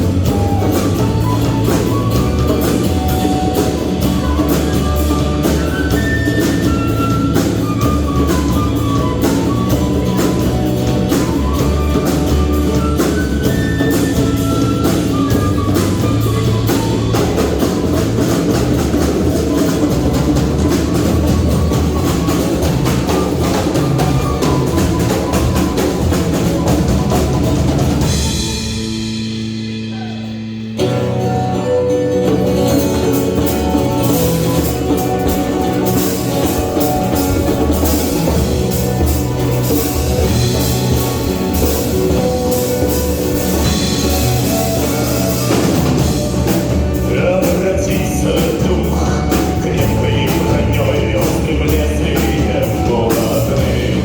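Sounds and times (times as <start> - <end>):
drum kit: 0.0 - 54.0
live rock band playing: 0.0 - 54.0.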